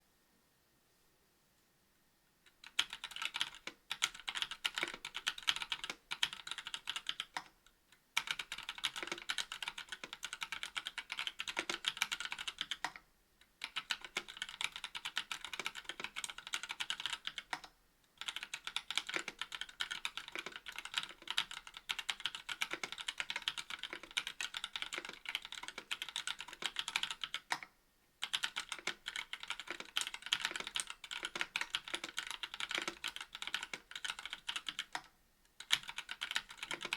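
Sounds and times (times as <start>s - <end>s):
mechanical keyboard typing: 2.6s - 7.6s, 8.2s - 13.0s, 13.6s - 36.9s.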